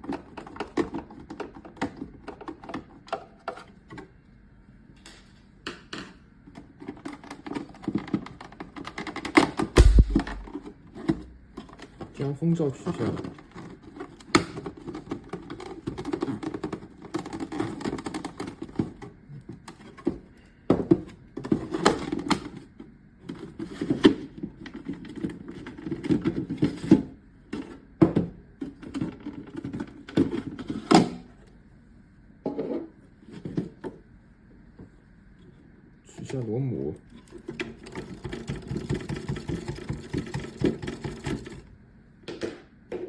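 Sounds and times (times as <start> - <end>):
sharp plastic clicks and knocks: 8.0 - 10.6
plastic parts rustling and scraping: 12.9 - 20.2, 37.1 - 38.6.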